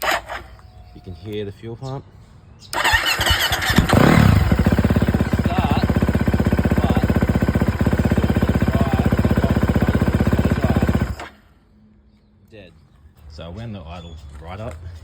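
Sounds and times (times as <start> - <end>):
motorcycle engine revving and idling: 2.8 - 11.4.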